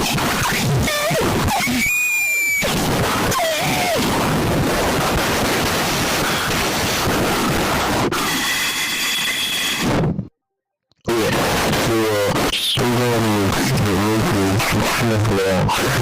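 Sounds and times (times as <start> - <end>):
hissing static: 0.0 - 10.0, 11.1 - 16.0
short high beep: 8.4 - 9.8.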